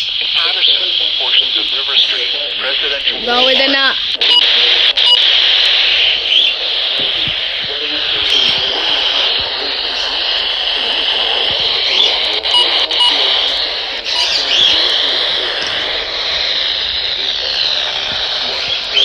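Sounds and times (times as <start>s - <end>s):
faint voice: 0.0s - 19.0s
radio static hiss: 0.0s - 19.0s
short beeps: 4.2s - 5.3s, 12.5s - 13.4s.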